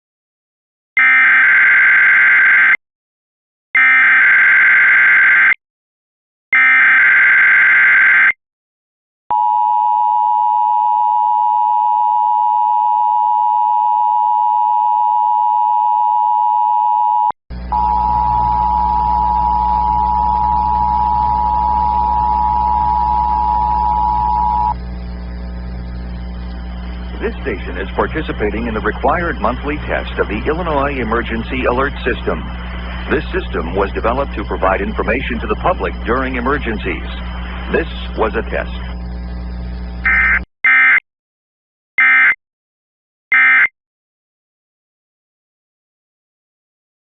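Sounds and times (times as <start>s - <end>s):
low hum: 17.5s - 40.4s
steady attention tone: 17.5s - 41.0s
buzzing digital header bursts: 18.6s - 41.0s.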